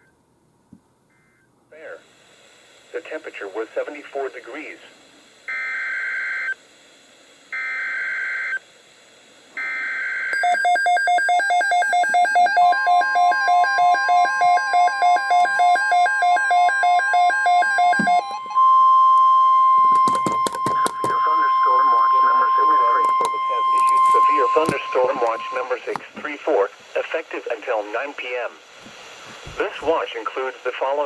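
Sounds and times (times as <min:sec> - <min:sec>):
steady single-pitch alarm tone: 0:05.4 - 0:06.6, 0:07.5 - 0:08.6, 0:09.6 - 0:25.9
screechy digital data tones: 0:10.2 - 0:25.8
rapid pulsing electronic beeps: 0:10.4 - 0:25.8.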